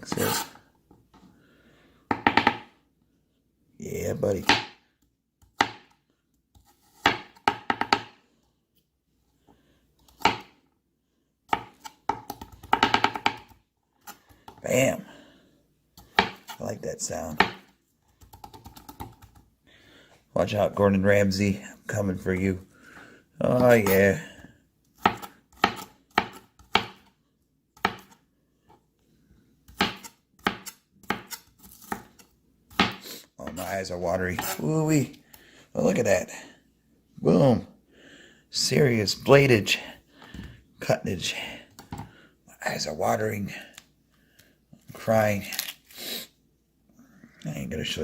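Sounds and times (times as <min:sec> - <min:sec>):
knife chopping on cutting board: 0:05.4 - 0:06.0, 0:07.0 - 0:08.2, 0:10.1 - 0:10.6, 0:16.0 - 0:16.6, 0:25.0 - 0:27.1, 0:27.8 - 0:28.2, 0:29.7 - 0:33.0.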